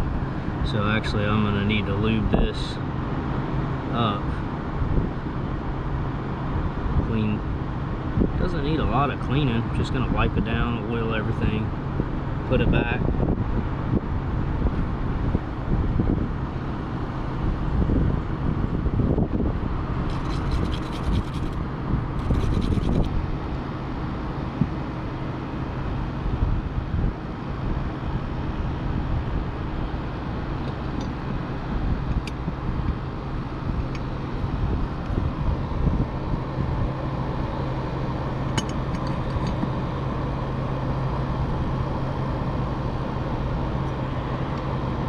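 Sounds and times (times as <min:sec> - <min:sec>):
steady low rumble: 0:00.0 - 0:45.0
scratchy rubbing by hand: 0:20.1 - 0:21.6, 0:22.2 - 0:23.1.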